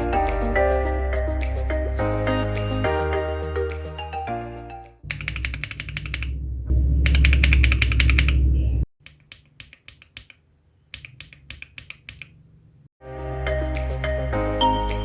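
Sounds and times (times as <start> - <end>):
mechanical keyboard typing: 5.1 - 6.4, 7.0 - 12.4.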